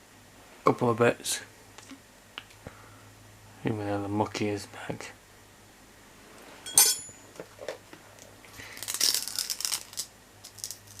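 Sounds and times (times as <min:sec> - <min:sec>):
plastic packaging crinkling: 0:08.6 - 0:11.0.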